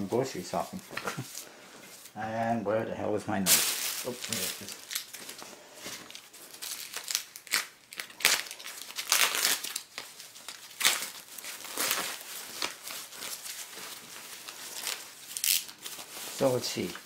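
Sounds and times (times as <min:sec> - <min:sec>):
plastic bags crinkling: 0:03.4 - 0:17.0.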